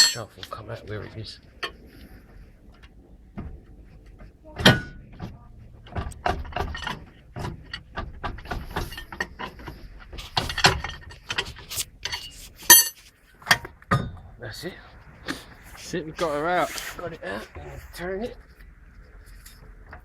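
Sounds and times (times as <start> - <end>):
metal knocks and clanks: 0.0 - 0.6, 1.6 - 14.3.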